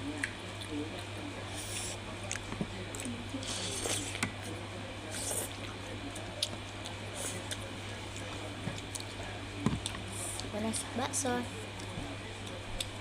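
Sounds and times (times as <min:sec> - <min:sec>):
wet chewing and slurping: 0:01.5 - 0:04.5.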